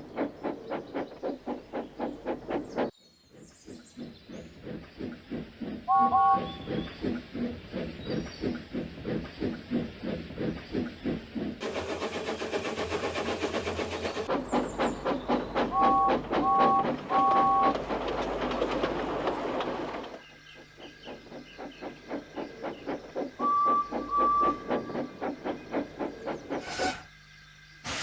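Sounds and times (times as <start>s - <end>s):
steam locomotive chuffing: 0.0s - 28.0s
two-note train whistle: 5.9s - 6.6s, 15.7s - 17.8s.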